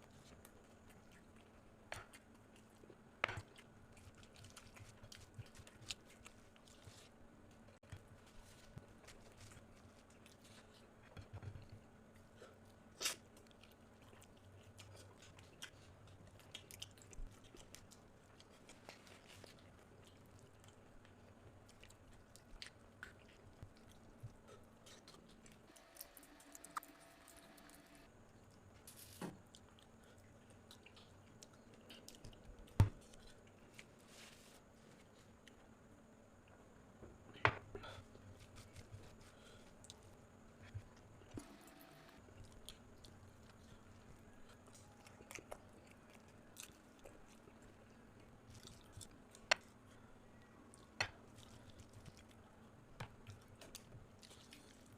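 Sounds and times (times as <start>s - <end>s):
person chewing: 7.8s - 27.8s, 29.4s - 34.0s, 42.2s - 54.9s.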